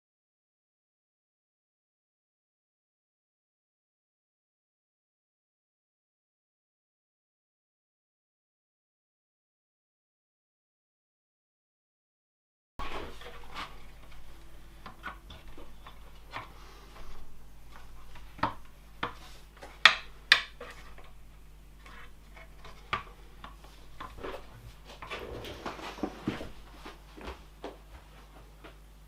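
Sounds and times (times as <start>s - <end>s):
steady low hum: 12.8s - 29.0s.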